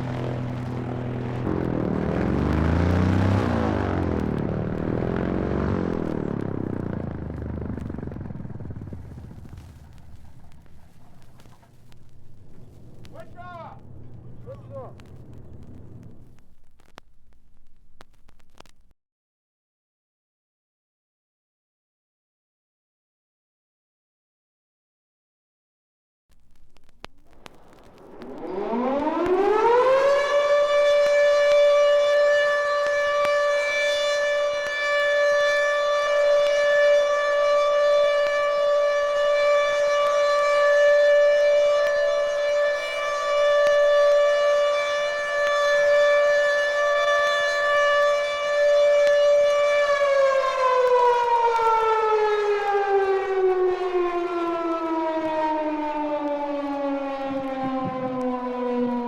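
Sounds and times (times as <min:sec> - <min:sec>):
siren winding up and down: 0:00.0 - 0:11.6, 0:27.4 - 0:59.0.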